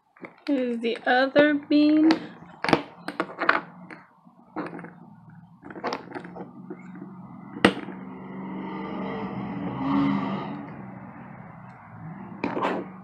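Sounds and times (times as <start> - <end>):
plastic toys being handled: 0.1 - 7.9.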